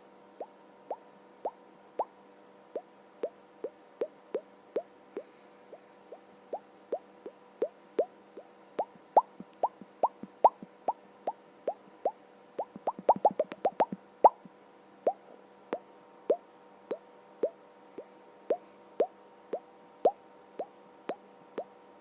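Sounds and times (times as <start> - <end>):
water dripping into a sink: 8.8 - 10.7, 12.6 - 14.0.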